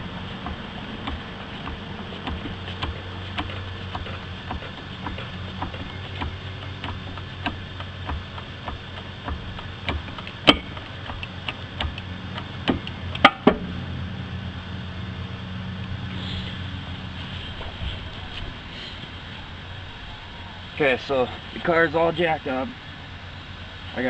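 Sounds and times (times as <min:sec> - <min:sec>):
steady low hum: 0:00.0 - 0:24.0
car jack clicking: 0:00.4 - 0:13.6.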